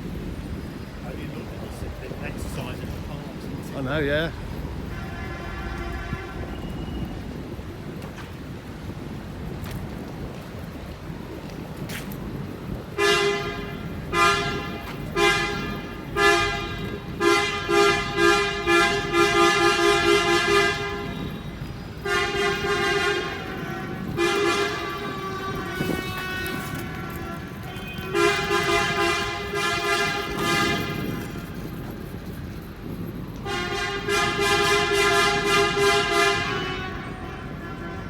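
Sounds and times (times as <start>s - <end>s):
two-note coach horn honking: 4.8s - 7.5s, 13.0s - 32.4s, 33.4s - 38.0s.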